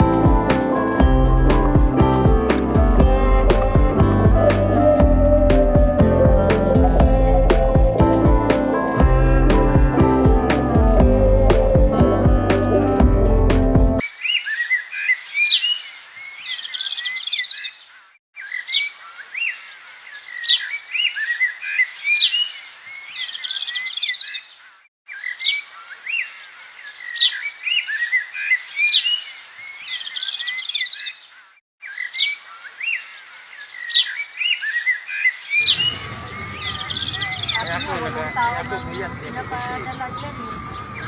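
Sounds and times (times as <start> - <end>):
birds chirping and whistling: 0.0 - 14.0, 35.5 - 41.0.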